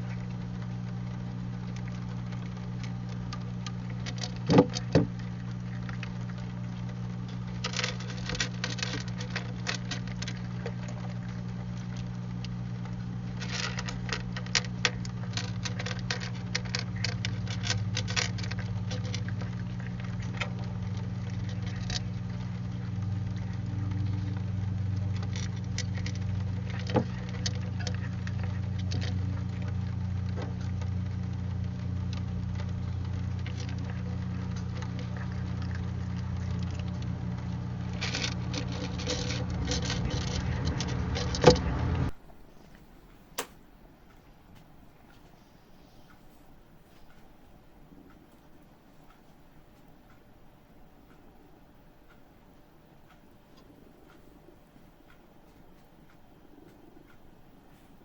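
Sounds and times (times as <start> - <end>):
cat crunching dry kibble: 0.0 - 43.5
low camera hum: 0.0 - 58.0.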